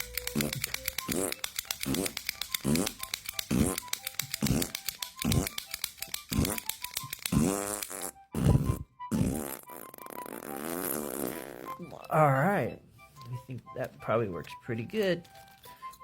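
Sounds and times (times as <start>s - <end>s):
lock pick gun trigger snapping: 0.0s - 7.9s
background music: 0.0s - 16.0s.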